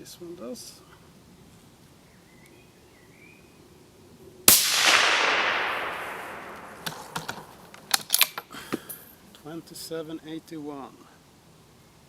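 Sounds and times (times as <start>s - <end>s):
suppressed rifle shot with echo: 4.5s - 7.9s.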